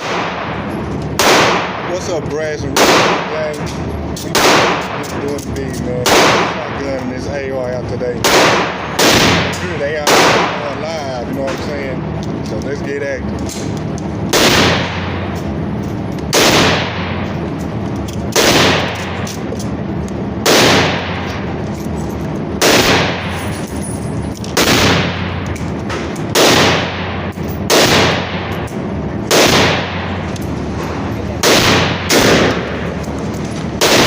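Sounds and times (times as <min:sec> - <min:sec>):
rifle shots: 0:00.0 - 0:05.4, 0:06.0 - 0:07.0, 0:08.2 - 0:10.8, 0:13.6 - 0:15.4, 0:16.3 - 0:17.4, 0:18.2 - 0:19.6, 0:20.4 - 0:21.6, 0:22.5 - 0:23.6, 0:24.4 - 0:30.4, 0:31.0 - 0:34.0.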